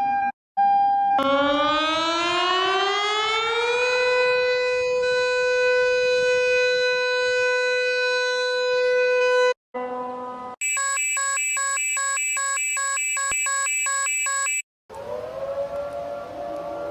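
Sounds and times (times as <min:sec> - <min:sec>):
warning siren winding up: 0:01.2 - 0:07.4, 0:10.6 - 0:16.9.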